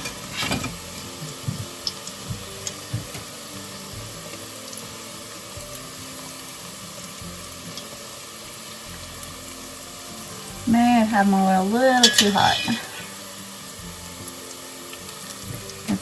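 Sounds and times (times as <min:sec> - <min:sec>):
food deep-frying in oil: 0:00.0 - 0:16.0
person talking: 0:10.6 - 0:13.1.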